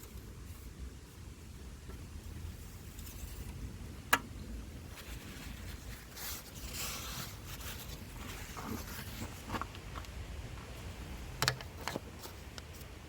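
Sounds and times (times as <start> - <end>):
scraping rustling handling noise: 0.0 - 4.0, 4.8 - 13.0.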